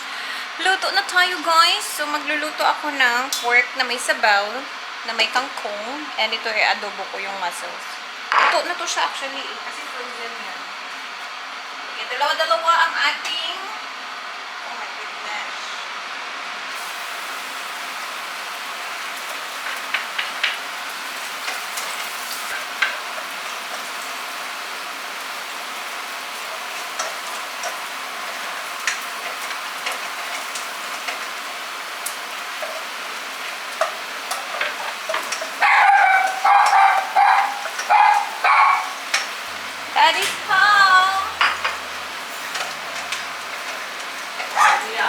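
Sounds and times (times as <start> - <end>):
food sizzling in a pan: 16.7 - 45.0
person speaking: 39.9 - 41.7.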